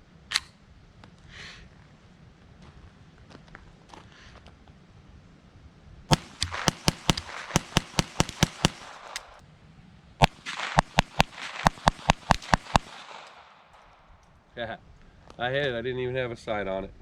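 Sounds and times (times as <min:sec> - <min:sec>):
rapid pistol shots: 0:06.1 - 0:09.4, 0:10.2 - 0:14.2.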